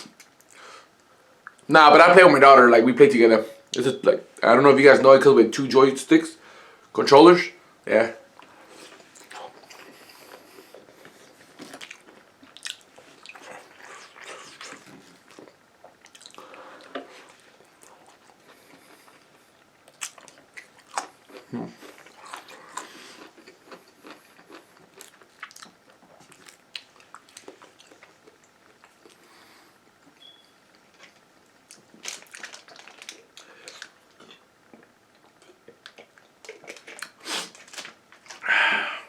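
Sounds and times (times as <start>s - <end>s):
chewing and biting food: 8.8s - 29.2s, 35.2s - 38.4s.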